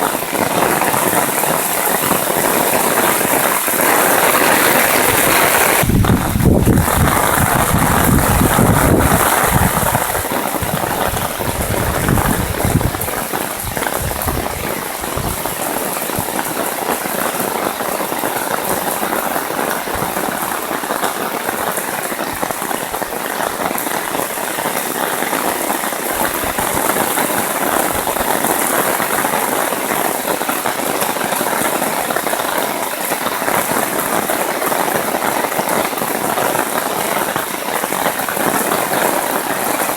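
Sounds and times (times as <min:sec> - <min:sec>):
heavy rain pattering: 0:00.0 - 0:39.9
low rumbling: 0:05.8 - 0:15.7.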